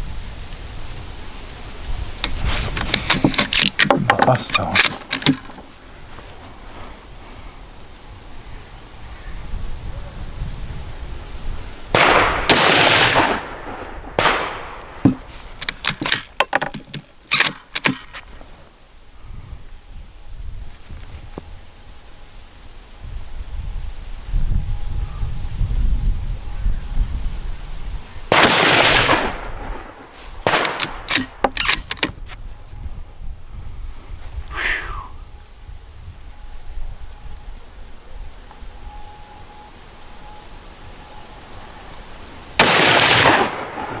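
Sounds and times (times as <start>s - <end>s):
metallic rifle bolt clicks: 2.2s - 5.6s, 15.6s - 18.2s, 30.5s - 32.2s
rifle shots with rolling echo: 11.9s - 15.2s, 28.3s - 31.8s, 42.6s - 44.0s.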